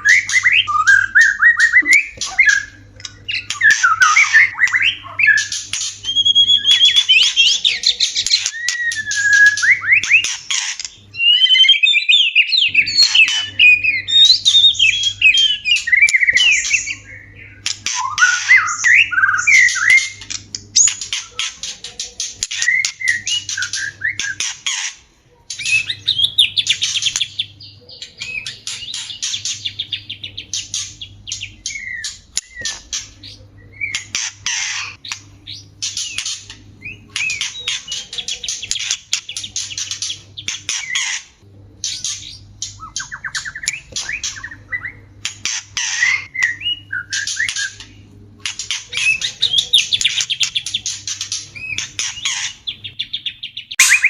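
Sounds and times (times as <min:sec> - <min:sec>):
bird whistled phrases: 0:00.0 - 0:10.4, 0:11.2 - 0:20.2, 0:25.6 - 0:32.8, 0:53.5 - 0:54.0
bird harsh chattering calls: 0:00.0 - 0:54.0.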